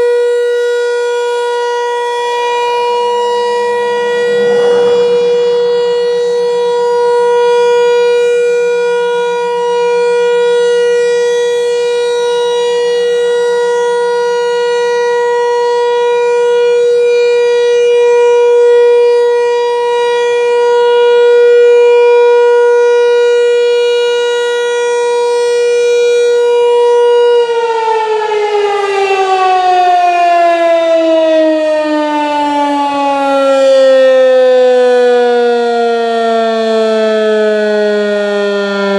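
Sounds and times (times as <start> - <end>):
warning siren steady tone: 0.0 - 38.9
siren winding down: 2.2 - 10.0, 27.0 - 38.9.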